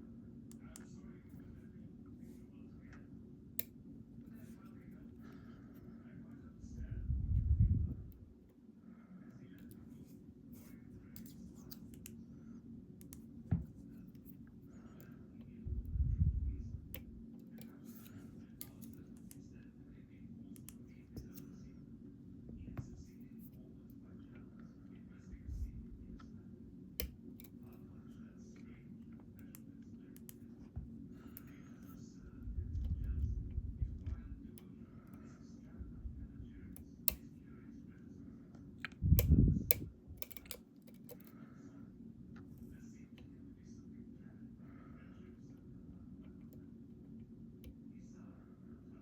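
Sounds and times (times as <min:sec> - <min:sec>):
lockpicking tools clicking: 0:39.2 - 0:41.3.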